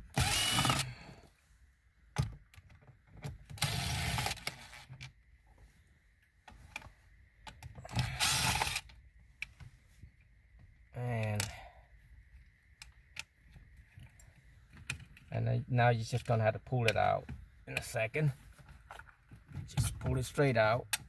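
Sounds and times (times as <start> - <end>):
cordless drill spinning screws: 0.1 - 0.9, 3.6 - 4.8, 7.9 - 8.8
small clicks of bit and screws: 2.2 - 5.2, 6.7 - 9.7.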